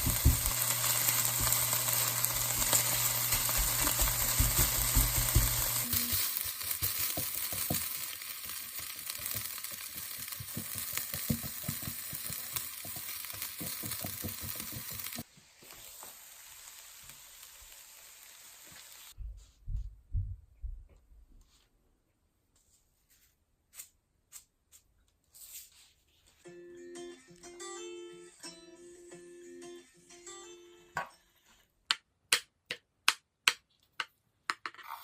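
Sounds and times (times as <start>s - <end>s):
food sizzling in a pan: 0.0s - 19.2s
spatula scraping a pan: 34.7s - 35.0s.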